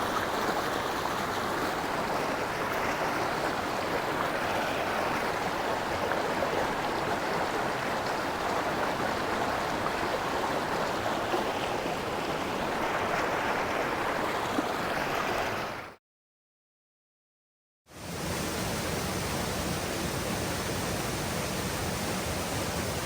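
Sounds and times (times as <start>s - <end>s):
river rushing: 0.0s - 15.9s.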